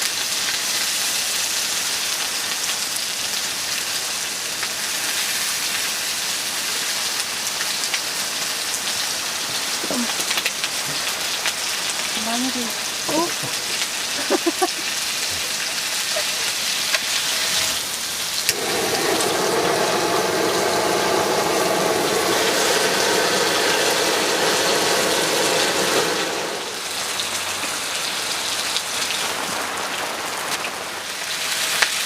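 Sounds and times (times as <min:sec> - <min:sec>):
heavy rain falling: 0:00.0 - 0:32.0
low rushing noise: 0:18.5 - 0:27.3.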